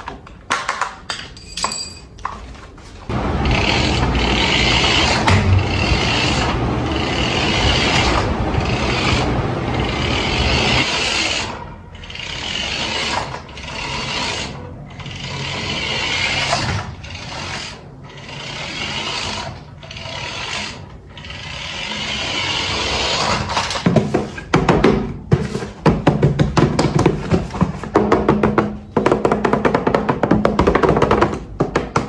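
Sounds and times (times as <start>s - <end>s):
rubbing and scraping strokes: 4.7s - 24.5s.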